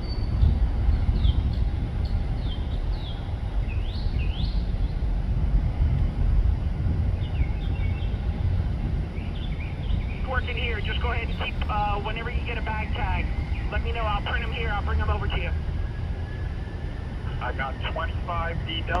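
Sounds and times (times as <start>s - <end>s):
jet engines rumbling: 0.0s - 19.0s
small birds chirping: 9.1s - 15.5s.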